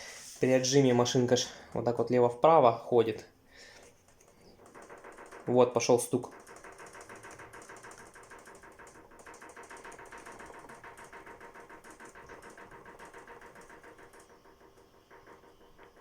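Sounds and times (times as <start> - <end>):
motor hum: 3.6 - 16.0
washing machine knocking: 4.5 - 16.0.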